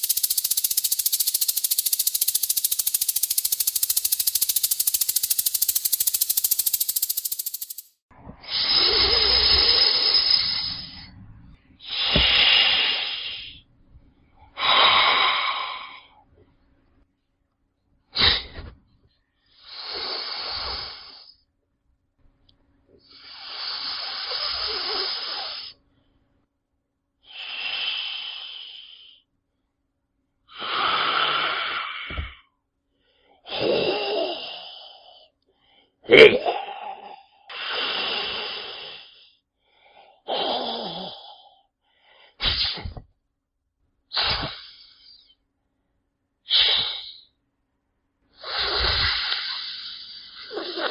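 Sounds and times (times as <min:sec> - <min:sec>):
snake hissing: 0:00.0 - 0:07.9, 0:08.5 - 0:10.8, 0:48.4 - 0:50.9.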